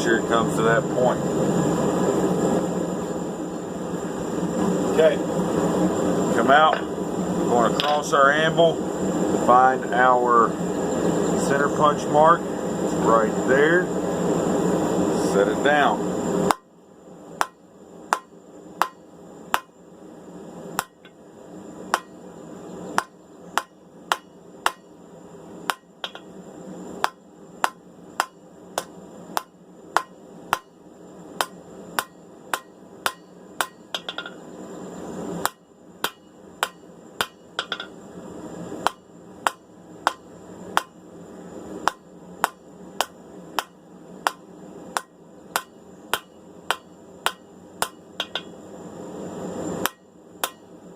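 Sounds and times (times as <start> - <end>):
hammer striking steel on anvil: 17.4 - 19.7, 20.8 - 21.2, 21.9 - 22.2, 23.0 - 24.9, 25.7 - 26.3, 27.0 - 30.8, 31.4 - 34.4, 35.4 - 38.0, 38.8 - 41.0, 41.8 - 44.4, 45.0 - 48.6, 49.8 - 50.7.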